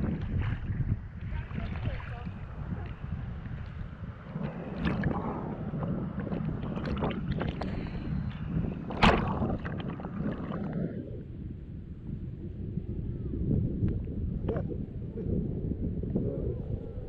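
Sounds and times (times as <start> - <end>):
sea water splashing at shore: 0.0 - 10.8
wind buffeting microphone: 0.0 - 17.0.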